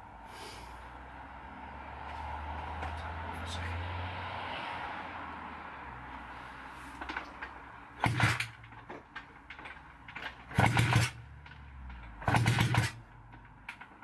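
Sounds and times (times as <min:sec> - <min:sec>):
engine kickstart cranking: 0:07.0 - 0:14.0.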